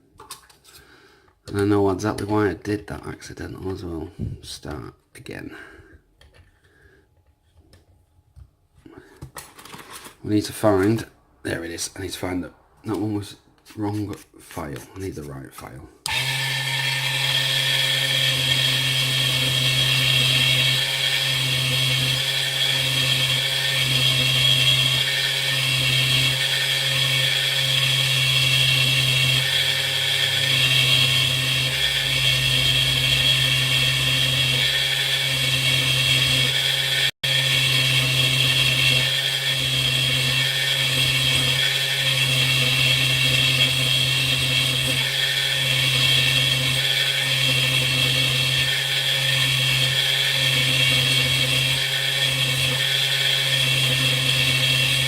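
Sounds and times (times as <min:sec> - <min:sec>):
rotary power tool whining: 0:16.1 - 0:55.0.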